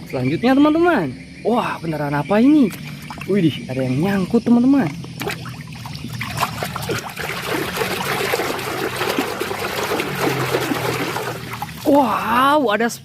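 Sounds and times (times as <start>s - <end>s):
water trickling and splashing: 2.5s - 12.5s.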